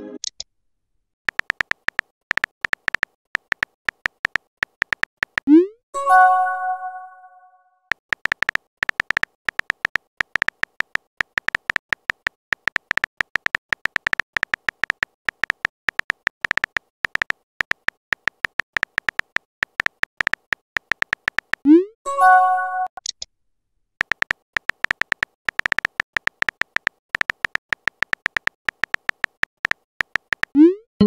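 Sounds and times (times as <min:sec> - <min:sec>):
phone keyboard typing clicks: 0:01.3 - 0:05.6, 0:07.9 - 0:21.7, 0:24.0 - 0:30.7
message alert chime: 0:05.5 - 0:07.5, 0:21.7 - 0:23.0.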